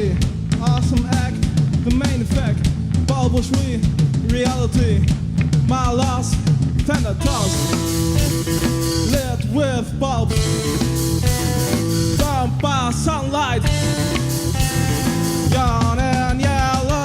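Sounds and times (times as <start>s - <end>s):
rock band playing live: 0.0s - 17.0s
electric guitar bending notes: 7.2s - 16.1s.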